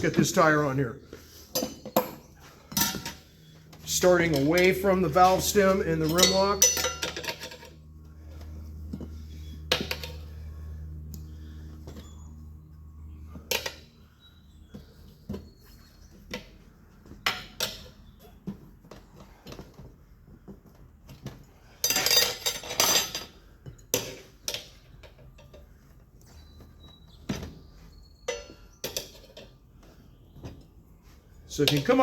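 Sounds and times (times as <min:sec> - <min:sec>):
tire iron scraping: 0:00.0 - 0:12.3
tire irons clinking on rim: 0:01.5 - 0:32.0.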